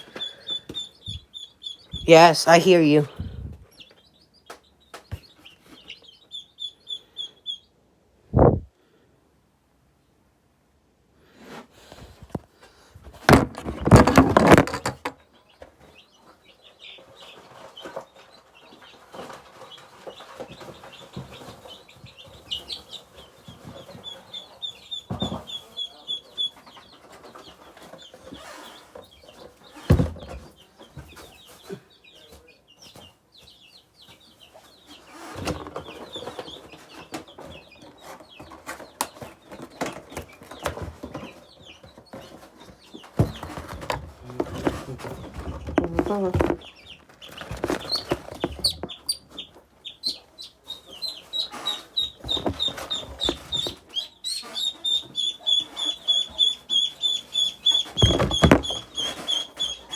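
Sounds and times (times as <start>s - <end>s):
chicks and ducklings peeping: 0.0s - 9.0s, 9.9s - 59.9s
thumps and rustling handling noise: 11.8s - 15.2s, 37.0s - 49.1s, 52.1s - 53.9s, 57.8s - 59.6s.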